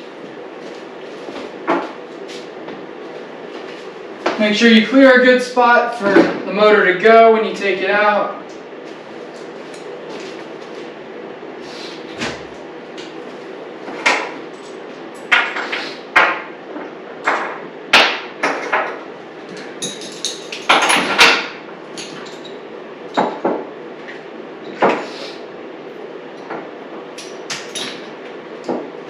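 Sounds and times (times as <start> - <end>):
steady background hum: 0.0 - 29.0
tools and metal parts clanking: 19.5 - 22.6, 27.2 - 28.1.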